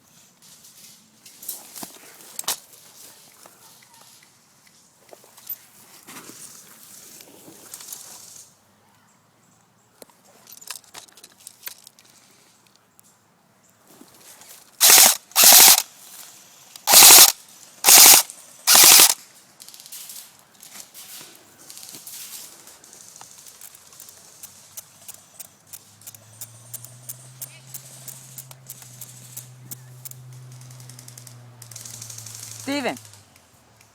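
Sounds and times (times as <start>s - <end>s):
airsoft gun bursts: 14.8s - 15.9s, 16.8s - 19.2s, 31.8s - 33.0s.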